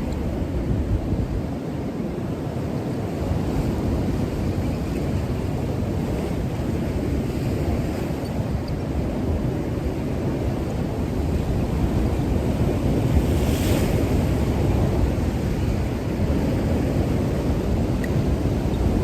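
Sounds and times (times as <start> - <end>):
sea surf: 0.0 - 19.0
wind rumbling on microphone: 0.0 - 19.0.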